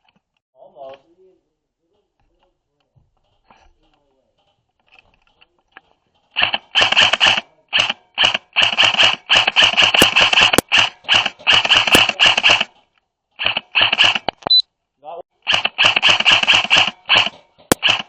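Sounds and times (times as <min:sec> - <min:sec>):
airsoft rifle full-auto bursts: 0:06.4 - 0:12.8, 0:13.4 - 0:14.4, 0:15.4 - 0:18.0.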